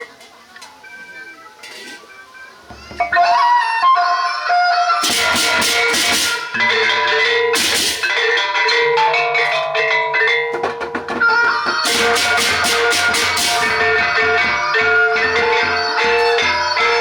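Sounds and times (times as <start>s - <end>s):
cymbals clashing: 5.0s - 17.0s
drums and gongs: 5.0s - 17.0s.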